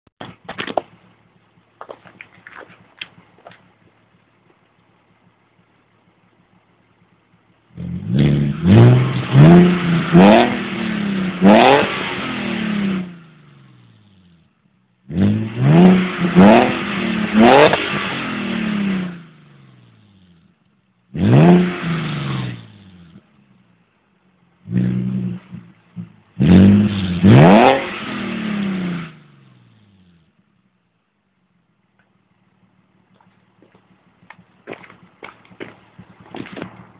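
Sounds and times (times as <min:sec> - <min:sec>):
car engine revving: 0:00.6 - 0:24.0, 0:24.6 - 0:30.6.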